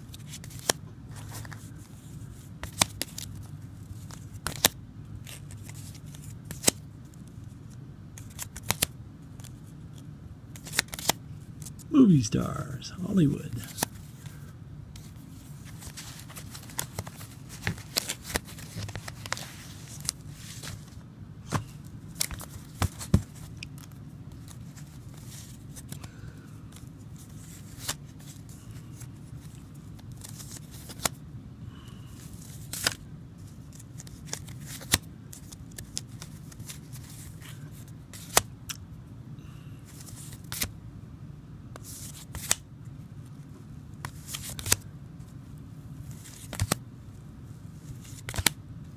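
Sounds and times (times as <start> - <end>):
steady low hum: 0.0 - 48.9
paper rustling: 15.0 - 26.0.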